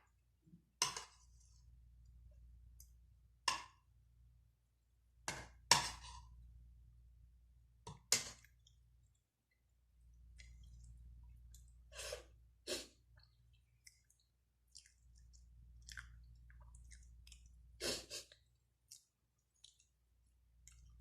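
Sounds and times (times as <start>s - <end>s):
low steady hum: 6.0s - 21.0s
person chewing with mouth smacks: 10.3s - 21.0s.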